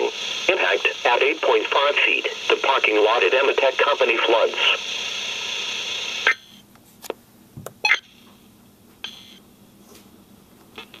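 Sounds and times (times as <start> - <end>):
radio receiver hiss: 0.0 - 7.2, 9.0 - 9.4.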